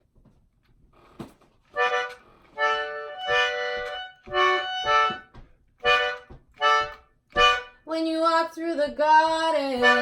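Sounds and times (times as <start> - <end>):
free-reed instrument chords: 1.8 - 7.8.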